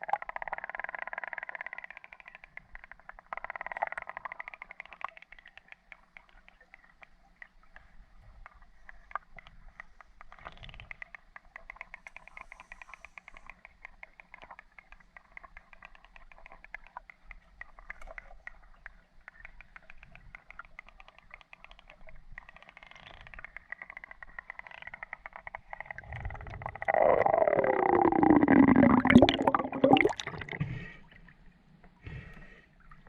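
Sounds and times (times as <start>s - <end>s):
underwater crackle of tiny clicks: 0.0s - 33.0s
faint low rumble: 25.7s - 31.9s.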